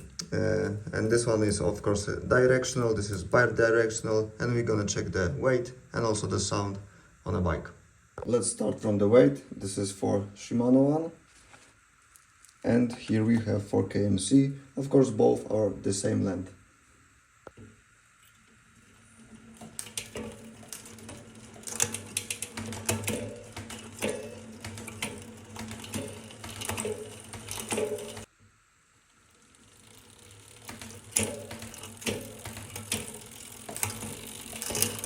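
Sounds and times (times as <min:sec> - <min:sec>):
bicycle chain running: 0:18.3 - 0:28.3, 0:29.1 - 0:35.0
chain clicks and rattles: 0:18.3 - 0:28.3, 0:29.3 - 0:35.0.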